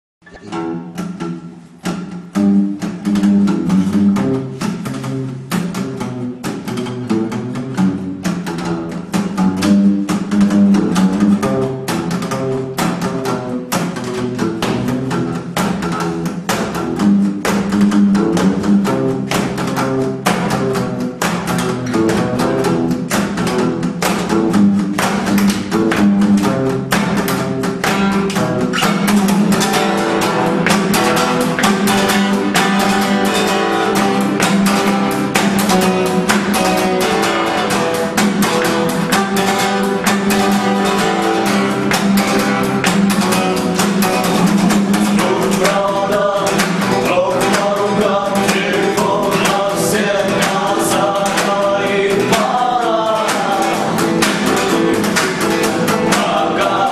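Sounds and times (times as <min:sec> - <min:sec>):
guitar song with quick beat: 0:00.2 - 0:56.9
person singing: 0:44.4 - 0:56.9.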